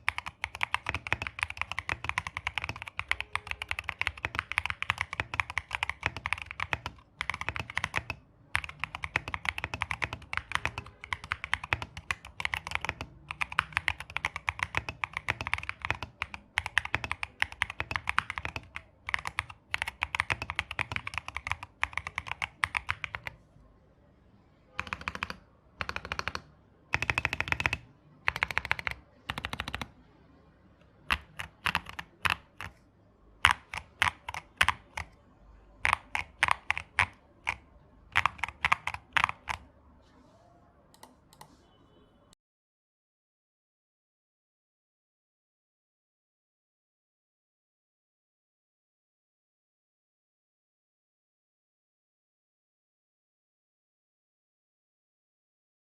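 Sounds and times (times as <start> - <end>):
mechanical keyboard typing: 0.0 - 23.4, 24.8 - 29.9, 31.0 - 32.8, 33.4 - 35.2, 35.8 - 39.7.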